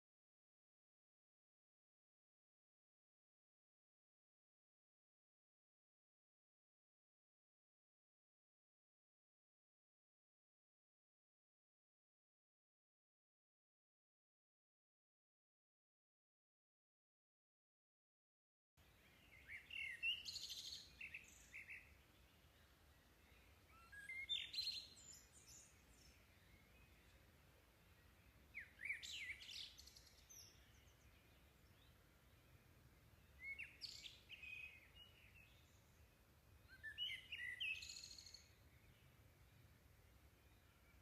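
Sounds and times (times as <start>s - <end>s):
songbird chirping: 18.8s - 41.0s.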